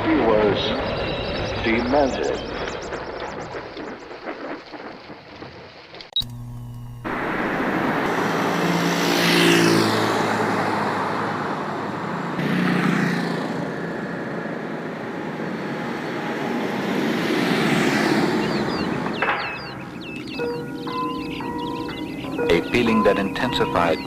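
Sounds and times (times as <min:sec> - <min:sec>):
vehicles passing by: 0:07.8 - 0:24.0.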